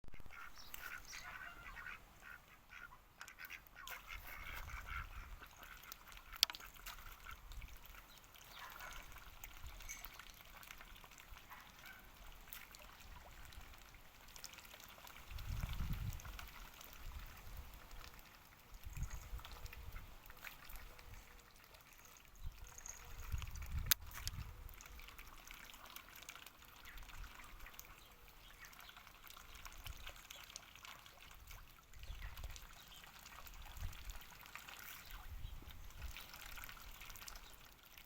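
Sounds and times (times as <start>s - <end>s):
ducks quacking: 0.1s - 7.4s.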